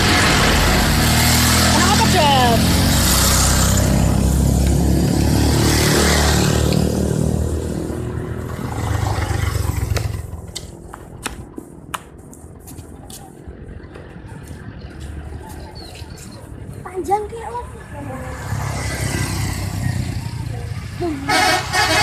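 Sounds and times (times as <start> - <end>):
bus engine rumble passing: 0.0 - 22.0.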